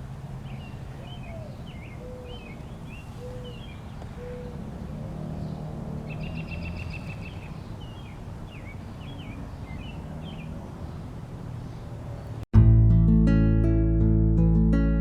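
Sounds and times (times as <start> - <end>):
birds chirping: 0.0 - 12.4
acoustic guitar music: 12.6 - 15.0.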